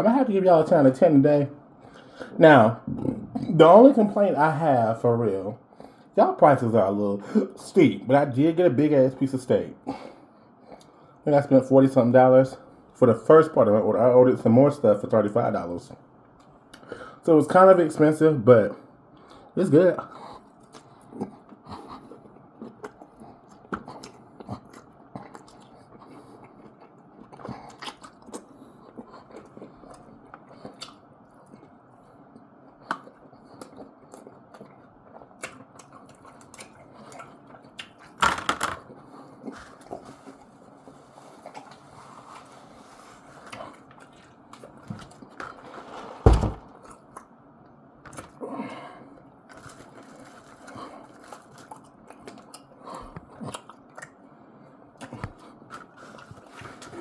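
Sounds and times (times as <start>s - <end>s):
person chewing: 19.2s - 38.2s, 38.8s - 45.6s, 49.1s - 57.0s.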